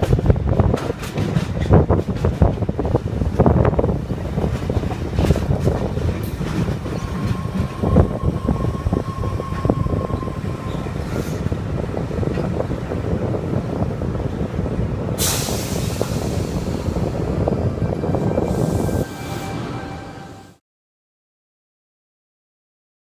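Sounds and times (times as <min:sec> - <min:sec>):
train wheels rumbling on rail: 0:00.0 - 0:20.6
rush of hiss: 0:15.2 - 0:17.1.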